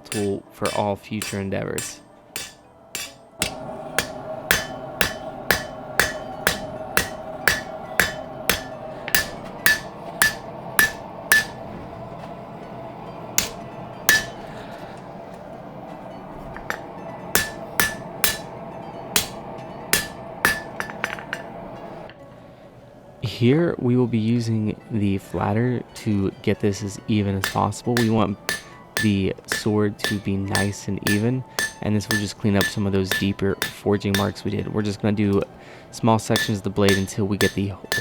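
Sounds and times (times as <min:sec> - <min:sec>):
hammer striking steel on anvil: 0:00.0 - 0:11.8, 0:13.4 - 0:14.6, 0:16.5 - 0:21.7, 0:27.4 - 0:35.5, 0:36.3 - 0:38.0
steady hum: 0:00.0 - 0:22.1, 0:27.4 - 0:34.7, 0:36.4 - 0:38.0.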